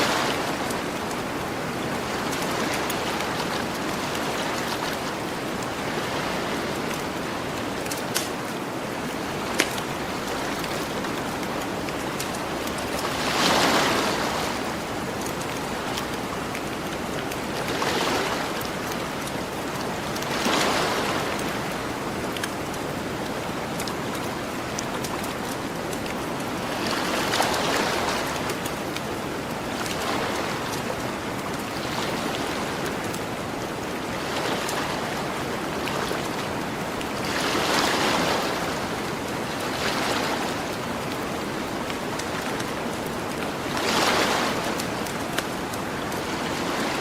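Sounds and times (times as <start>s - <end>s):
ocean waves breaking on beach: 0.0s - 47.0s
campfire crackling: 6.7s - 13.2s.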